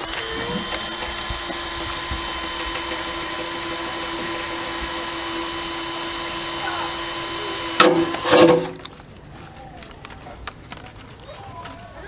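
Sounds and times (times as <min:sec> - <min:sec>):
power tool motor whining: 0:00.0 - 0:09.0.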